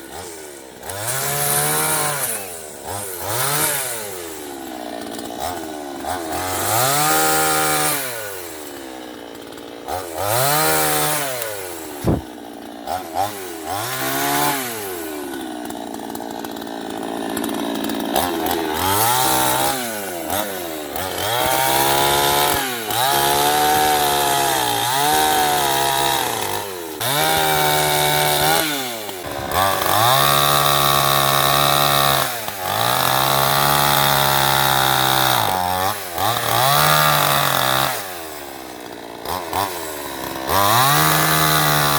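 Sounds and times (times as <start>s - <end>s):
chainsaw cutting wood: 0.0s - 41.9s
sharp knock: 12.0s - 12.3s.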